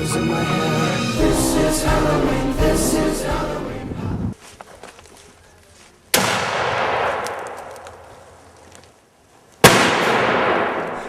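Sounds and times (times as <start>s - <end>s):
loud explosive bangs: 9.6s - 11.0s.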